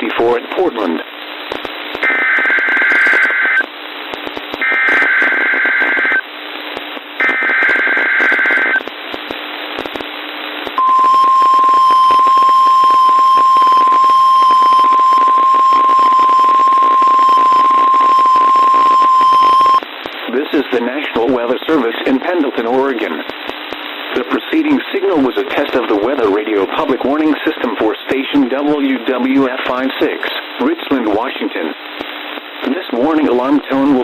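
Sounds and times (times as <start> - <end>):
radio hiss: 0.0 - 34.0
steady warning alarm tone: 10.8 - 19.8.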